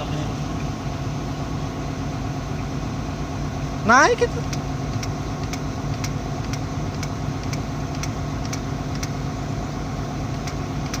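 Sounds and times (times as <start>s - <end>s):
diesel engine idling: 0.0s - 11.0s
light regular ticking: 4.2s - 9.2s, 10.2s - 11.0s.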